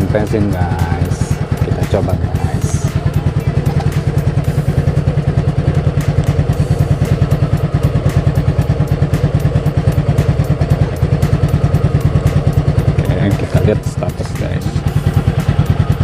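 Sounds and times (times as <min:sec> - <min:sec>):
scooter engine idling: 0:00.0 - 0:16.0.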